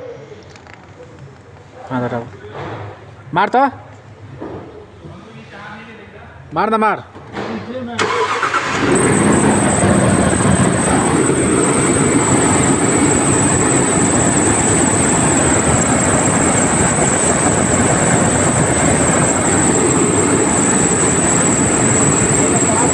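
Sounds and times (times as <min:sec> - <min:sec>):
car engine clattering: 0:07.2 - 0:22.9
thin high whine: 0:08.7 - 0:22.9.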